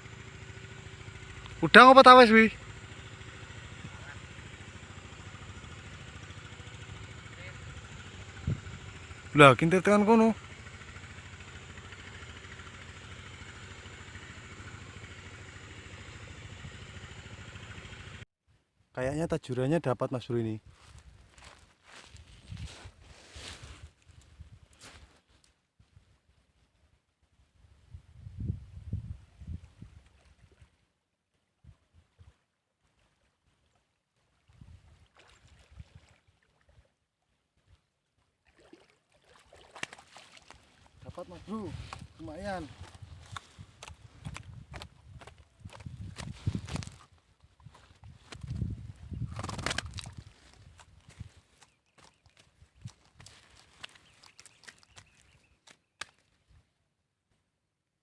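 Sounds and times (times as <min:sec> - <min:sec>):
engine idling: 0:00.0 - 0:18.2, 0:41.0 - 0:46.7
water rustling around boat: 0:29.8 - 0:56.4.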